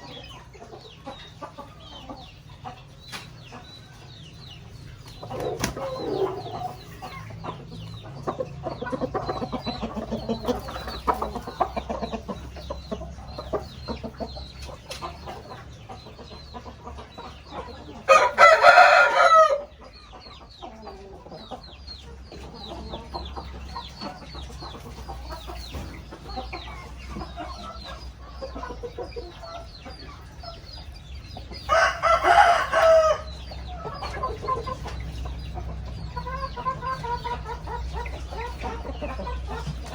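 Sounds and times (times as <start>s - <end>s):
chickens clucking: 0.0s - 39.9s
rooster crowing: 18.1s - 19.7s, 31.7s - 33.3s.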